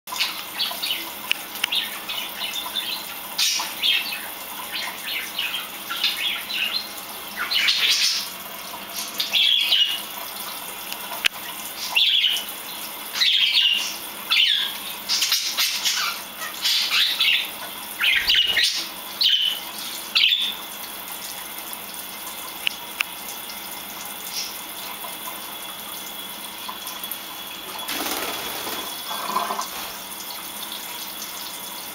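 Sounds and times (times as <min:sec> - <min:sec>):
budgies chirping: 0:13.1 - 0:19.6
tap running into sink: 0:27.7 - 0:30.0.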